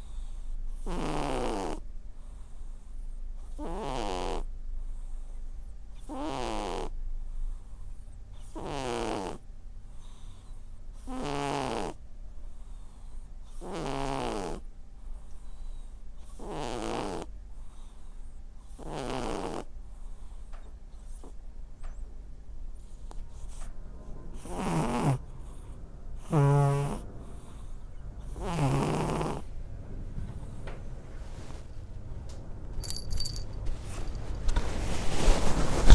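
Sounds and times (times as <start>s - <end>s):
cat snoring: 0.0s - 7.0s, 8.4s - 9.4s, 10.0s - 14.6s, 15.5s - 18.0s, 18.6s - 20.4s, 21.0s - 21.4s, 24.3s - 29.5s
steady low hum: 19.7s - 35.9s.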